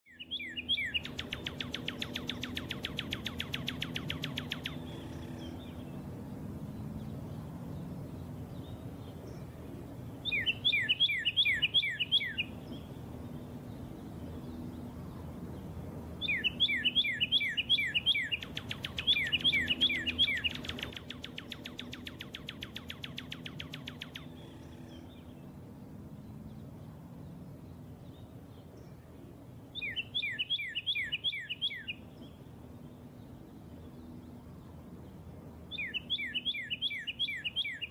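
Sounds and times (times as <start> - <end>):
bird chirping: 0.1 - 37.9
faint low background hum: 0.1 - 37.9
bird rattling trill: 0.8 - 5.4, 16.8 - 24.3.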